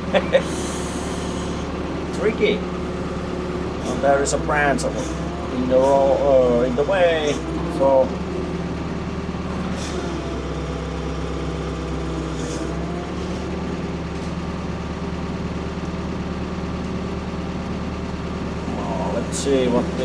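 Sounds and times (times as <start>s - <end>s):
excavator engine running: 0.0s - 20.0s
short hisses: 0.4s - 1.8s, 3.7s - 7.5s.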